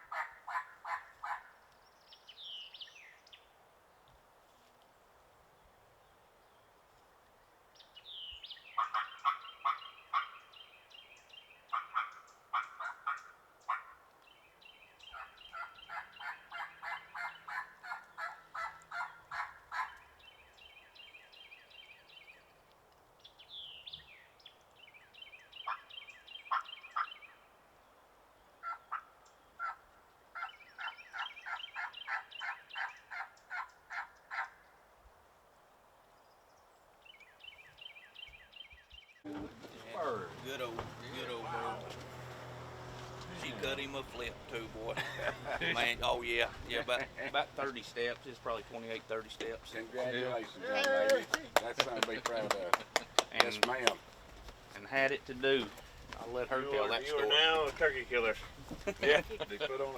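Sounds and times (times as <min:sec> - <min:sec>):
turkey yelping: 0:00.0 - 0:01.5, 0:08.8 - 0:10.5, 0:11.7 - 0:14.0, 0:15.1 - 0:20.2, 0:25.6 - 0:27.3, 0:28.6 - 0:34.7, 0:39.3 - 0:49.2.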